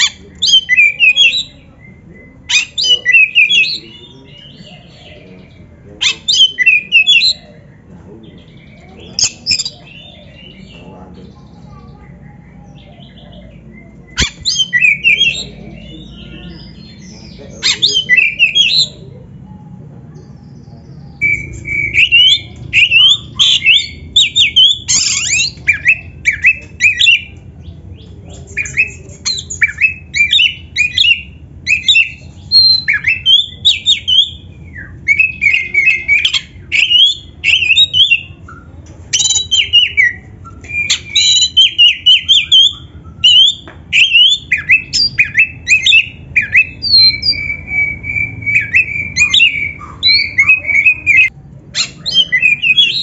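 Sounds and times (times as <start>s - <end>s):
songbird whistling song: 0.0s - 53.0s.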